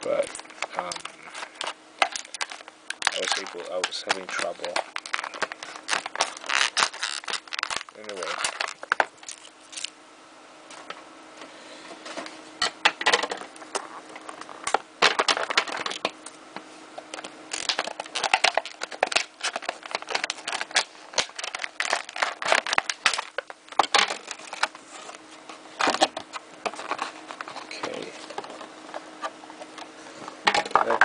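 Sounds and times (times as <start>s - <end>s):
packaging crinkling and tearing: 0.1s - 9.9s, 13.7s - 16.1s, 17.1s - 25.2s.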